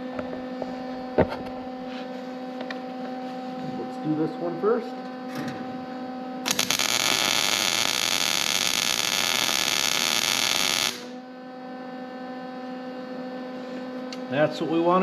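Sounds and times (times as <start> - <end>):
steady electrical hum: 0.0 - 15.0
welding arc crackling: 6.5 - 11.2.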